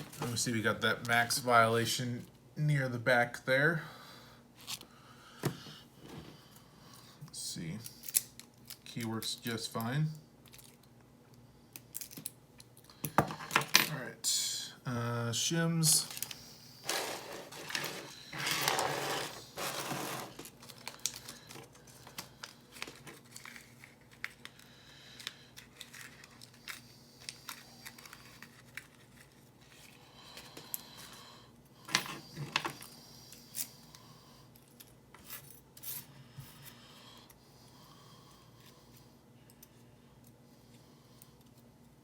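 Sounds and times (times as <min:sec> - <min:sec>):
scraping rustle: 0:16.8 - 0:20.5.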